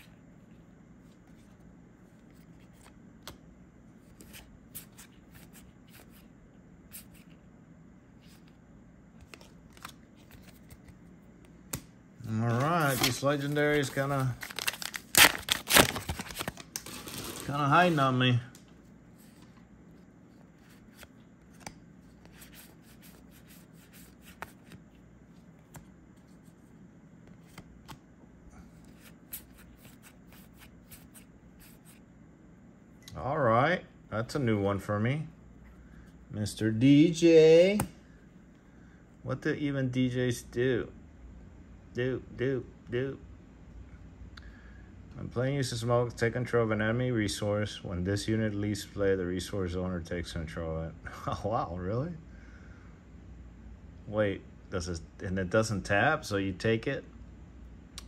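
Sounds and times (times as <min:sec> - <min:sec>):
low room hum: 0:00.0 - 0:58.0
trading cards flipped by hand: 0:01.1 - 0:03.4, 0:09.2 - 0:11.9, 0:20.4 - 0:26.6, 0:27.2 - 0:28.0, 0:28.8 - 0:32.0.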